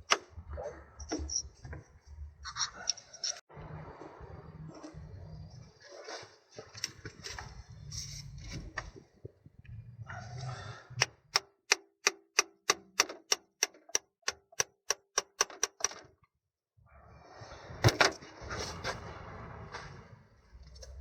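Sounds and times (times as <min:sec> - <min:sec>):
tool handling noise: 0:10.9 - 0:16.2
sharp metallic clicks: 0:11.0 - 0:16.1.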